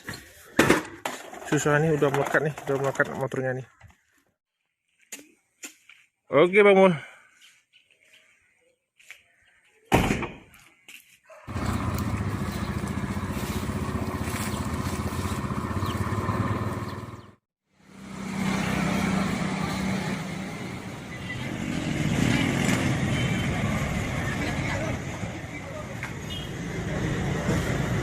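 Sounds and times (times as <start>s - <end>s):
thump: 9.9s - 10.5s
road noise: 11.4s - 28.0s
vehicle engine running: 11.5s - 20.9s.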